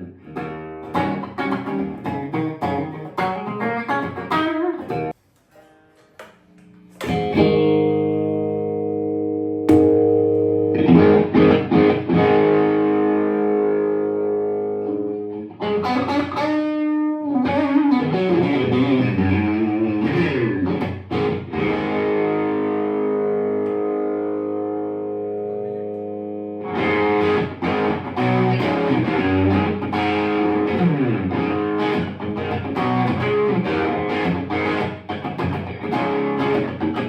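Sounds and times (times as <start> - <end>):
distorted electric guitar: 0.0 - 37.0.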